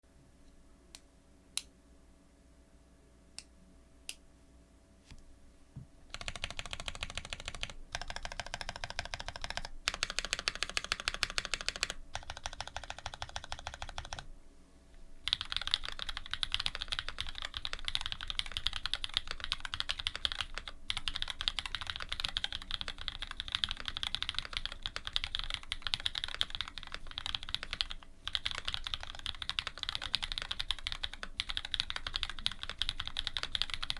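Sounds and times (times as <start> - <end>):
typing on mechanical keyboard: 6.1 - 14.2, 15.3 - 33.9.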